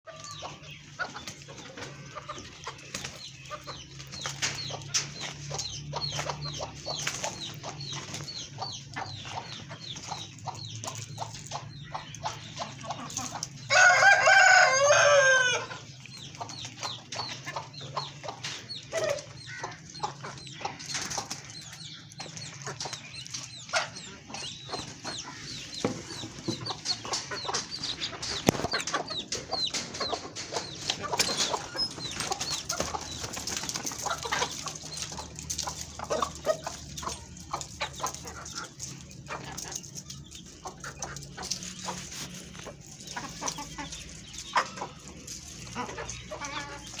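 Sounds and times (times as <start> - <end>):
chicks peeping: 0.1 - 47.0
hens clucking: 0.1 - 47.0
rooster crowing: 13.7 - 15.7.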